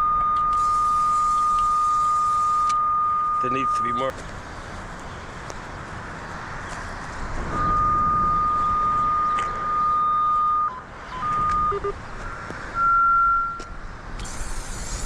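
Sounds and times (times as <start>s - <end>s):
cable locator signal beep: 0.0s - 4.1s, 7.5s - 13.7s.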